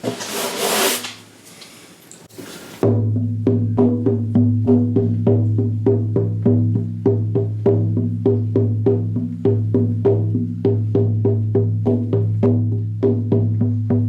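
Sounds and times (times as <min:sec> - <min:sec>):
hand drum booming: 0:02.8 - 0:14.0.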